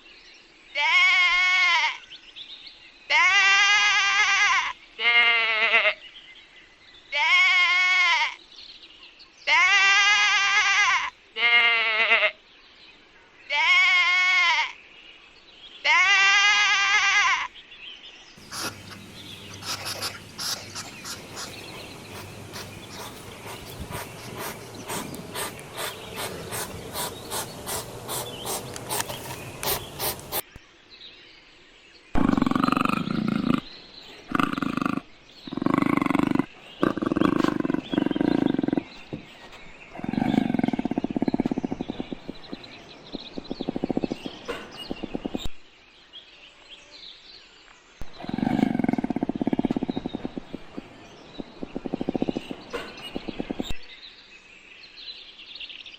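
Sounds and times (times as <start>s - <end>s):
animal call pulses: 18.4s - 30.4s, 40.0s - 42.6s, 48.1s - 53.7s
animal roars: 32.2s - 33.7s, 34.3s - 39.0s, 39.9s - 45.4s, 48.1s - 53.7s.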